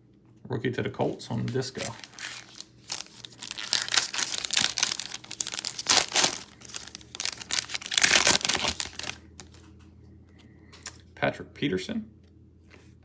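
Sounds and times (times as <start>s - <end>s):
foil wrapper crinkling and tearing: 1.3s - 9.6s.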